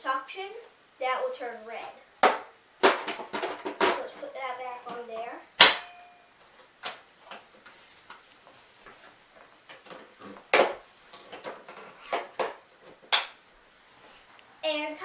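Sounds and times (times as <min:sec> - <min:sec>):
plastic parts clicking and knocking: 0:02.3 - 0:04.1, 0:09.7 - 0:13.4.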